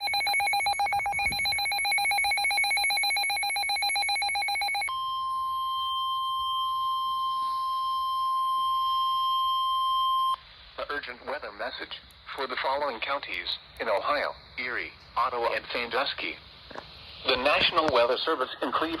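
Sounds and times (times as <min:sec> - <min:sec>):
pulsing electronic alarm: 0:00.0 - 0:10.4
steady high alarm tone: 0:00.0 - 0:10.4.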